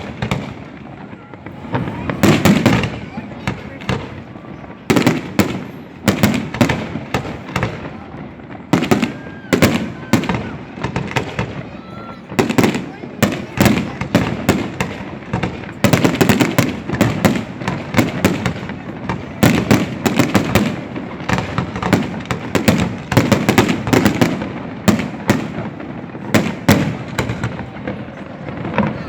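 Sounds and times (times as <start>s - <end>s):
fireworks bangs and crackling pops: 0.0s - 29.0s
heavy firework booms: 0.0s - 29.0s.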